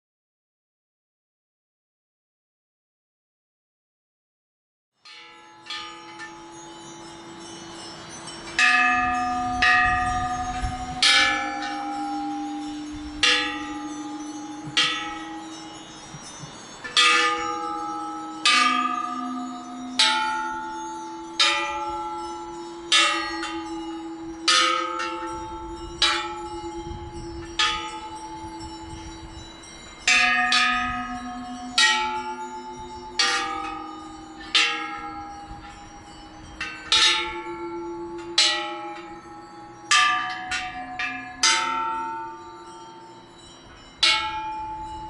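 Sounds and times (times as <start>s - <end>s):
temple bell ringing: 5.0s - 45.0s.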